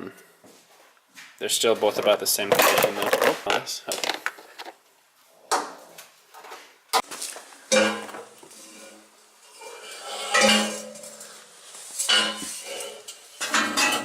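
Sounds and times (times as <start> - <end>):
metal clanking and rattling: 12.0 - 14.0.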